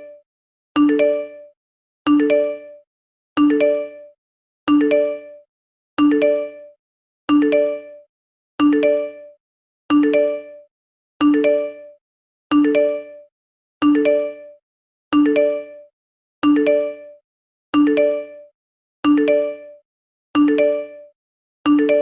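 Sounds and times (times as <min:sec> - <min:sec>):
phone message alert chime: 0:21.7 - 0:22.0.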